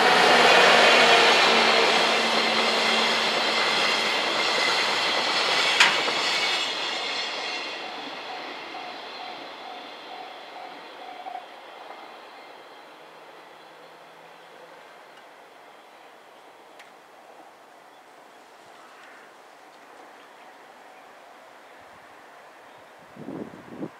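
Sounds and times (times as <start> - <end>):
train wheels running: 0.0 - 12.9.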